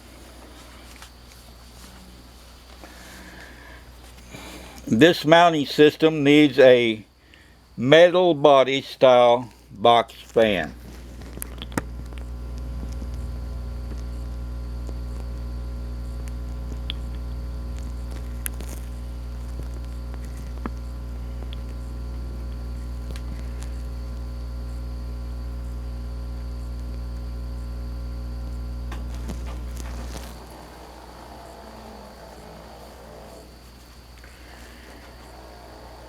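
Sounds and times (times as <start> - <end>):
electrical hum: 0.0 - 36.0
faint ticks: 11.2 - 36.0.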